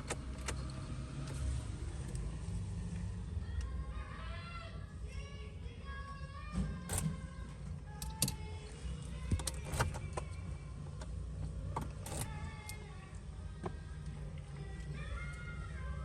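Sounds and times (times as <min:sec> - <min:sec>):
low steady hum: 0:00.0 - 0:16.0
keys jangling: 0:12.0 - 0:12.8.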